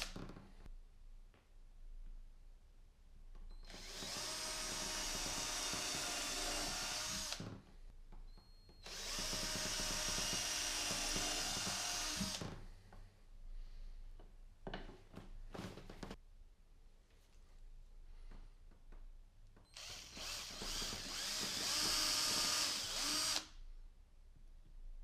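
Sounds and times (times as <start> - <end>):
power drill drilling into wood: 3.7 - 7.5, 8.8 - 12.5, 19.8 - 23.5.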